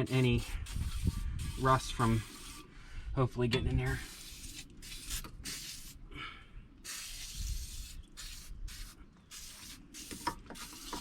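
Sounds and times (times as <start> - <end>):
aerosol spray hissing: 6.8 - 11.0.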